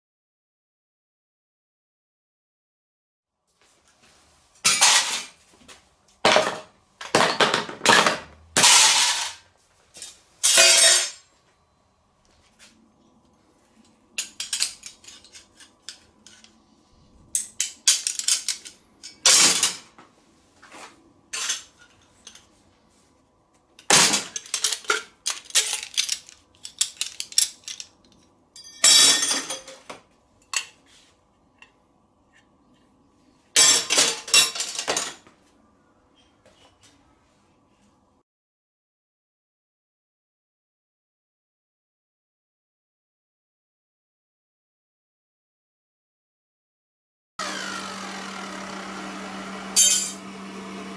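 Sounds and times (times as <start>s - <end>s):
metal pieces clattering: 7.2s - 9.4s, 17.4s - 19.8s, 23.9s - 29.7s.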